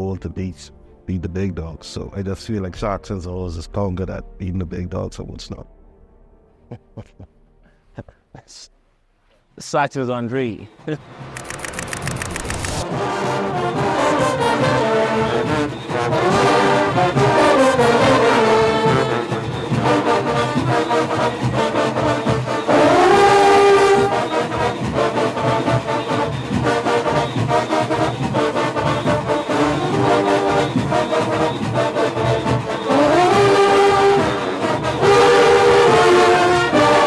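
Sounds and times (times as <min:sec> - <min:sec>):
pulsing beat: 0:10.6 - 0:37.0
brass section playing horn line: 0:12.8 - 0:37.0.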